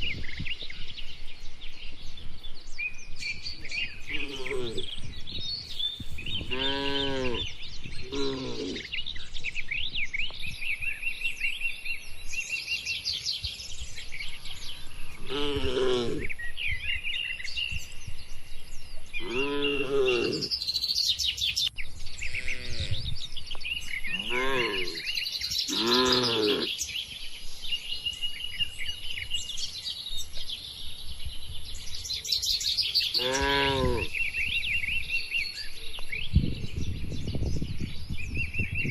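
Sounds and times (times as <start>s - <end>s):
birds chirping: 0.0s - 38.9s
cattle lowing: 4.0s - 5.0s, 6.2s - 9.0s, 15.1s - 16.4s, 19.2s - 20.6s, 24.0s - 26.7s, 33.1s - 34.1s.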